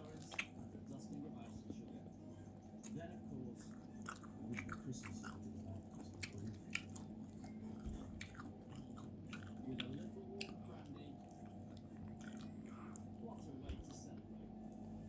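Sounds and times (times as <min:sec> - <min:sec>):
wet chewing sounds: 0:00.0 - 0:14.3
faint steady hum: 0:00.0 - 0:15.0.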